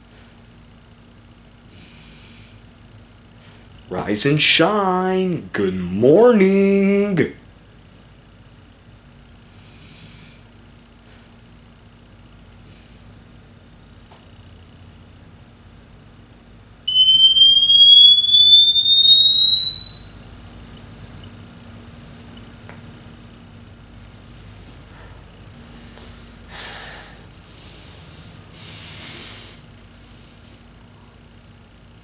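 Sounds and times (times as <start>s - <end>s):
rising electronic sine tone: 16.9s - 28.2s.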